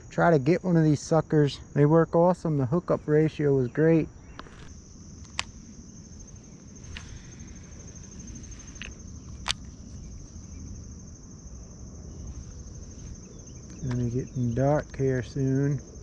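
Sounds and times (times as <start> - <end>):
insects trilling: 0.0 - 16.0
sharp clicks: 4.3 - 5.7, 6.8 - 10.1, 13.7 - 14.1.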